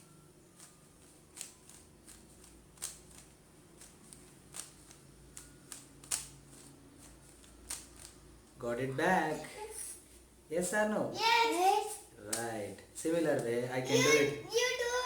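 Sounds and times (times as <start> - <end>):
puzzle cube layers clicking: 0.6 - 8.2.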